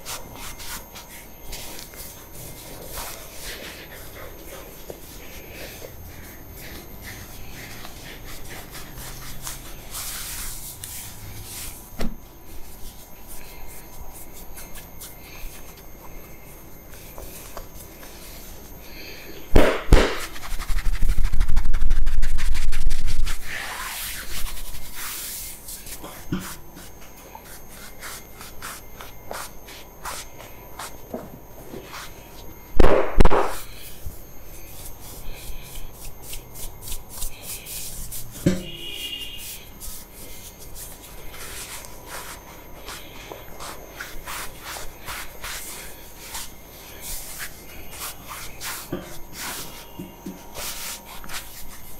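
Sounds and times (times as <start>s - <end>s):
hands rubbing scalp and hair: 0.0s - 11.9s, 20.1s - 31.0s, 31.8s - 32.3s, 34.6s - 38.4s, 39.3s - 51.9s.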